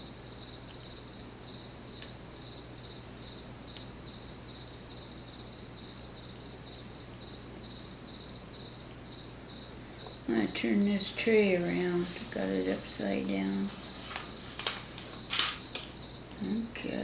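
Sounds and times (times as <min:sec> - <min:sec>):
cricket chirping: 0:00.0 - 0:17.0
faint low hum: 0:00.0 - 0:17.0.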